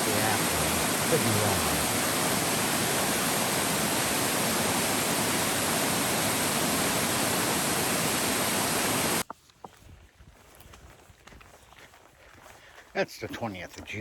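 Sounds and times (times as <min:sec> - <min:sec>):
river water rushing: 0:00.0 - 0:09.2.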